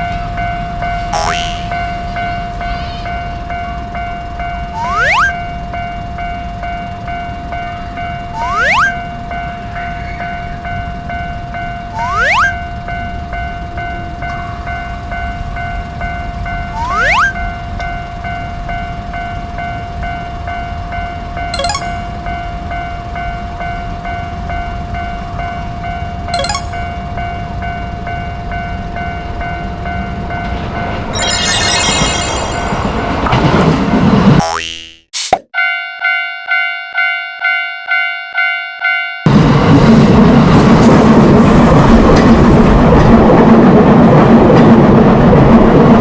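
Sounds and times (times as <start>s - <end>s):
level crossing alarm ringing: 4.6s - 5.6s, 8.2s - 9.3s, 11.9s - 12.8s, 31.2s - 33.2s
rising whistle-like swoop: 4.8s - 5.4s, 8.4s - 9.0s, 12.0s - 12.6s, 16.8s - 17.4s.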